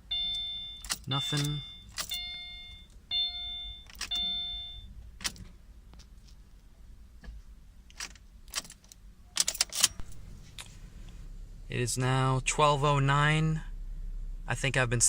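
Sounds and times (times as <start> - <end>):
car warning chime dinging: 0.0 - 5.0.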